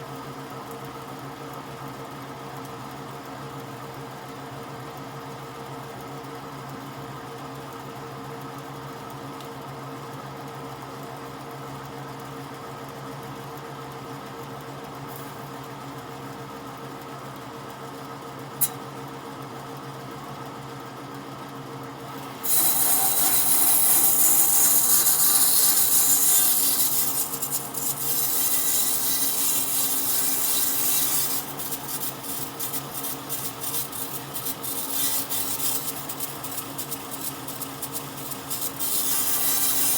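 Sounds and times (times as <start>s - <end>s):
sharp click: 18.6s - 18.8s
power tool motor humming: 22.2s - 39.9s
tool rasping into wood: 22.3s - 39.9s.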